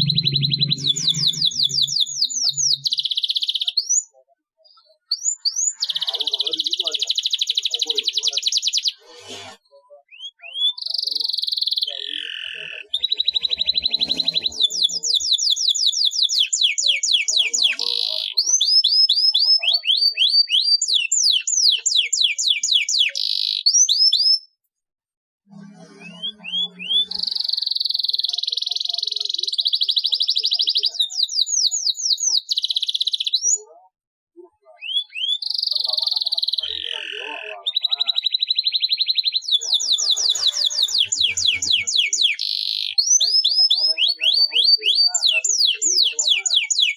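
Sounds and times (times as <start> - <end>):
canary singing trills: 0.0 - 24.5, 25.5 - 33.9, 34.5 - 46.9.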